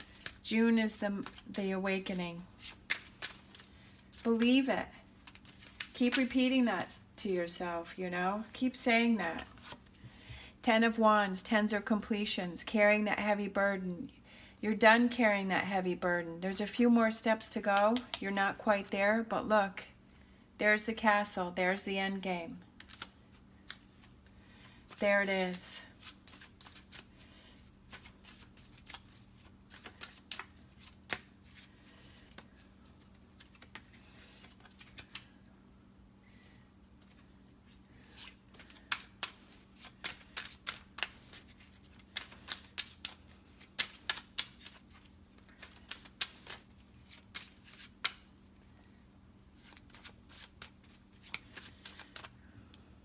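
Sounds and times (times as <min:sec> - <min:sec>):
cards being shuffled: 0:00.0 - 0:06.9, 0:09.2 - 0:09.9, 0:22.8 - 0:35.3, 0:37.0 - 0:48.3, 0:49.6 - 0:52.4.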